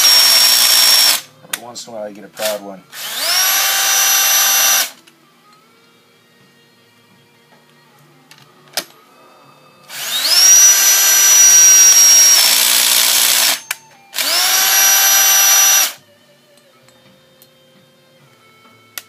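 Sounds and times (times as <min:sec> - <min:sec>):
power tool whining: 0:00.0 - 0:01.2, 0:02.4 - 0:05.0, 0:09.9 - 0:16.0.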